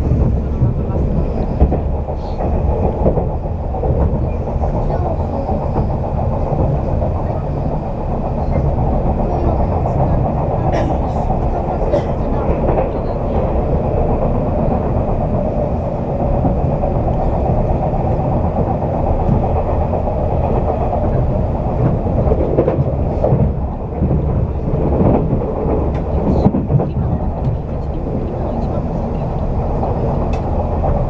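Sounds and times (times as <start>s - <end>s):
electric train rumble: 0.0s - 31.0s
faint rail-joint clicks: 30.2s - 31.0s.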